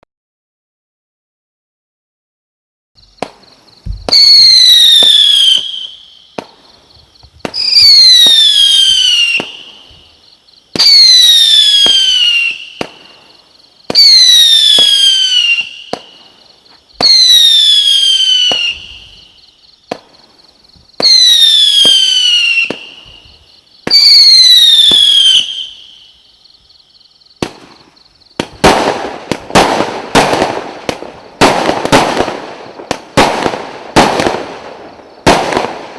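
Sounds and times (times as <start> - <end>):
falling firework whistles: 3.0 - 35.9
cracking firework bangs: 3.1 - 26.0, 27.4 - 35.9
low firework thump: 3.2 - 4.2.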